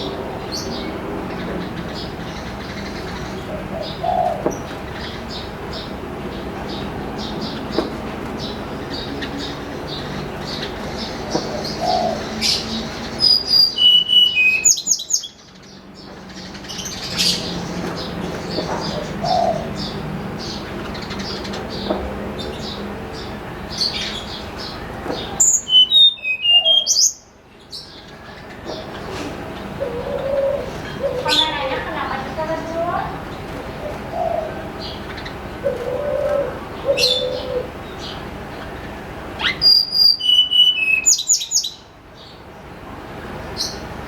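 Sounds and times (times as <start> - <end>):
bird chirping: 0.0 - 42.5
bird whistling flute-like notes: 39.4 - 41.3.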